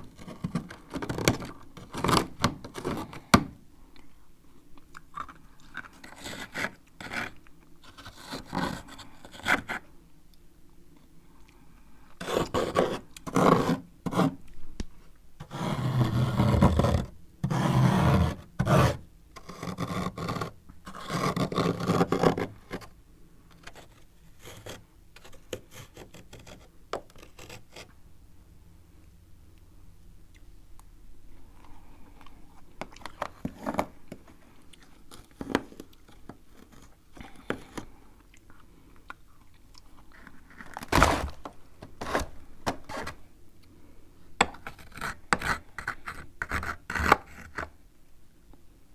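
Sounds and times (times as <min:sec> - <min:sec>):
spoon scraping frost: 0:42.0 - 0:43.2.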